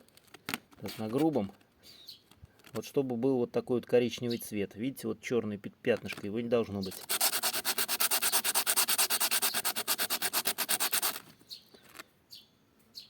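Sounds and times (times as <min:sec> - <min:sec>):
brake pad scraping on sandpaper: 0:06.8 - 0:12.0.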